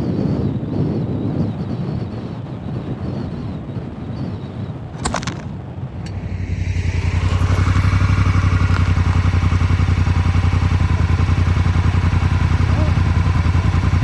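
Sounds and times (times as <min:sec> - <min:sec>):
motorcycle engine running: 0:05.0 - 0:14.0.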